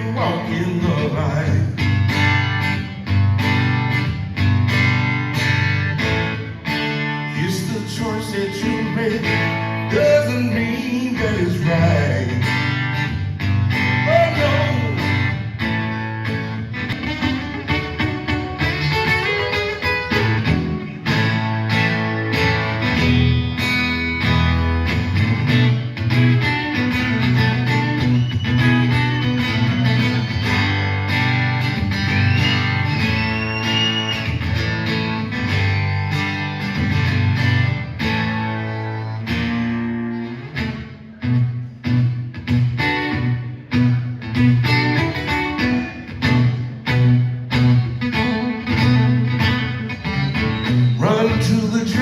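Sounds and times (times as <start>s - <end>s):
acoustic guitar picking lead lines: 0.0s - 52.0s
steady bass line: 19.9s - 45.2s.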